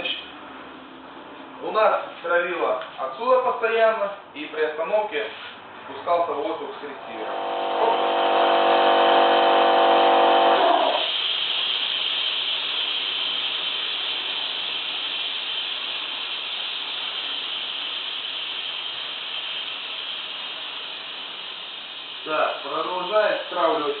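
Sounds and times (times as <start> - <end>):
air compressor motor cutting off: 6.9 - 23.9
compressed air hissing: 7.0 - 24.0.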